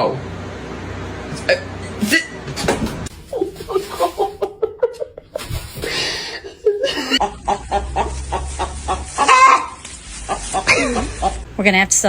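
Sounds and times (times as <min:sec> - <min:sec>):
person laughing: 0:03.3 - 0:07.9.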